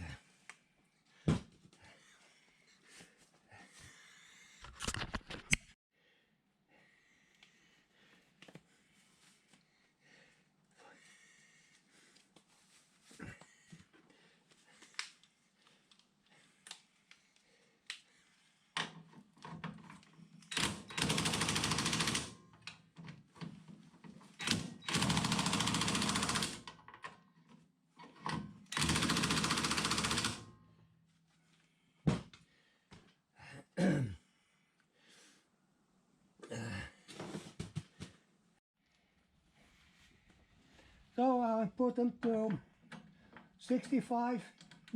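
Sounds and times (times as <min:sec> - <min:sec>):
impact wrench bursts: 0:20.5 - 0:22.3, 0:24.4 - 0:26.6, 0:28.7 - 0:30.4.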